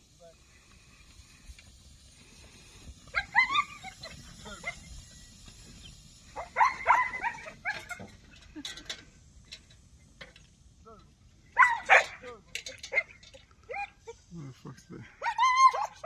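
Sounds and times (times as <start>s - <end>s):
dog barking: 6.4s - 8.0s, 11.6s - 12.2s.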